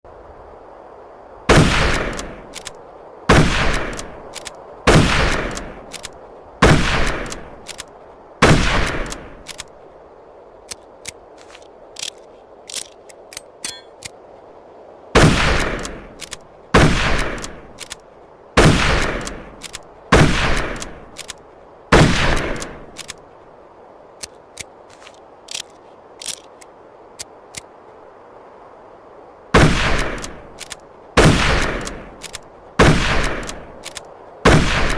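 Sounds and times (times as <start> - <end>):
rifle shots with echo: 1.5 - 2.4, 3.3 - 4.1, 4.9 - 6.0, 6.6 - 7.7, 8.4 - 9.4, 15.2 - 17.8, 18.6 - 21.1, 21.9 - 22.9, 29.6 - 30.4, 31.2 - 32.0, 32.8 - 33.7, 34.4 - 34.9
light metallic clicks: 1.8 - 2.8, 3.6 - 6.2, 7.0 - 8.0, 8.8 - 9.8, 10.6 - 14.2, 15.5 - 16.5, 17.2 - 18.1, 18.9 - 19.9, 20.5 - 21.5, 22.3 - 23.3, 24.2 - 27.8, 30.0 - 30.9, 31.5 - 32.5, 33.1 - 34.2.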